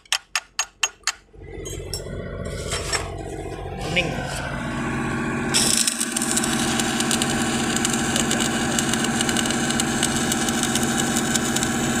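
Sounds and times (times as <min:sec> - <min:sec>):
engine running steadily: 0:01.0 - 0:12.0
dense irregular crackle: 0:05.7 - 0:12.0.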